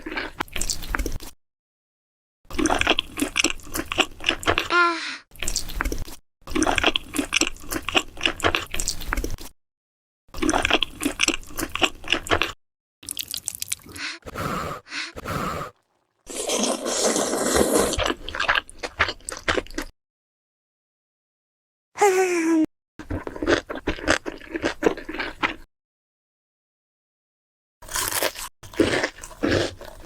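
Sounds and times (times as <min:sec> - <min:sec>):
wet chewing and crunching: 0:00.0 - 0:01.4, 0:02.5 - 0:04.7, 0:05.4 - 0:09.5, 0:10.3 - 0:19.9, 0:23.0 - 0:25.7, 0:27.8 - 0:30.0
hissing slurp: 0:13.8 - 0:18.1.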